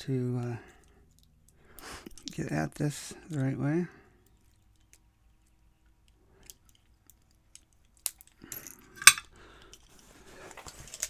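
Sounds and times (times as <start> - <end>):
metallic clicks of lock picking: 6.0 - 9.9.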